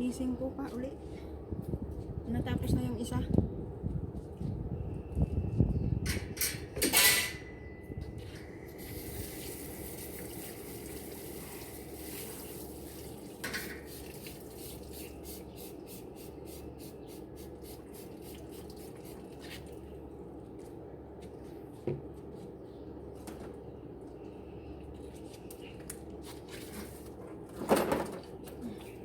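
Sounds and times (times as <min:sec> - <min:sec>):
metal grill parts clattering: 0:06.1 - 0:07.5.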